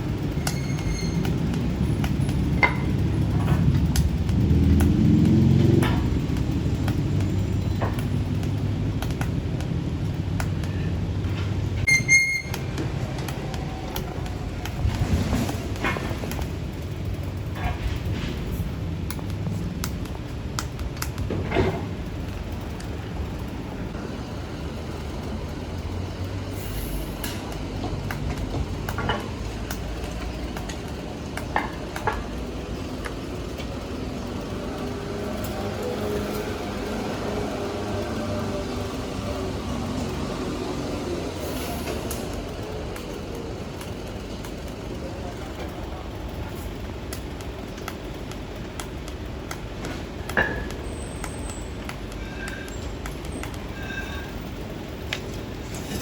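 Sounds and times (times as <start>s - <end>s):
faint clicks: 41.4s - 55.4s.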